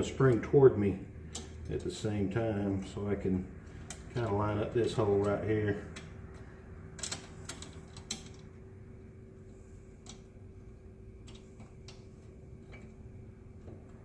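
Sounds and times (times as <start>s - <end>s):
light metallic clicks and taps: 1.3s - 1.8s.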